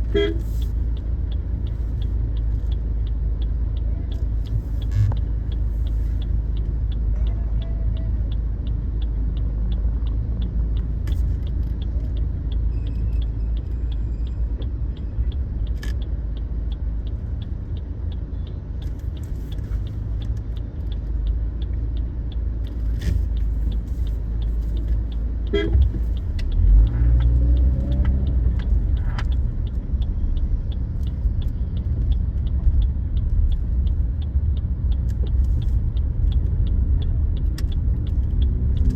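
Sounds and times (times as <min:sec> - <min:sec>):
car road and engine rumble: 0:00.0 - 0:38.9
car horn toot: 0:00.1 - 0:00.4, 0:25.5 - 0:25.9.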